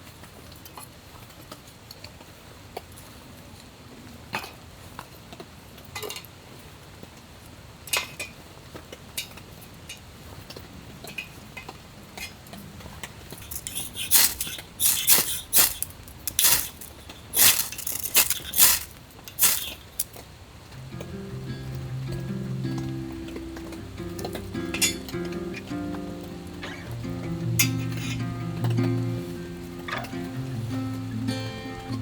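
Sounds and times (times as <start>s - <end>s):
metal items clinking: 13.3s - 20.1s.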